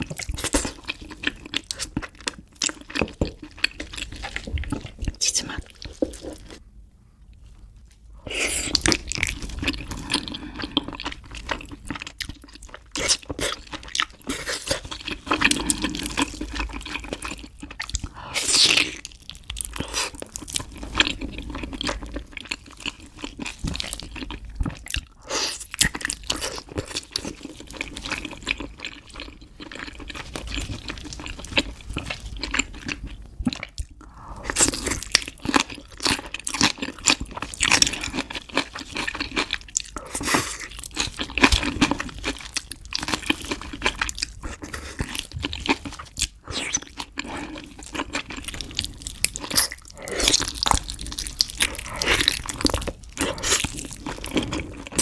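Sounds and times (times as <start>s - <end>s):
biting and chewing: 8.6s - 55.0s.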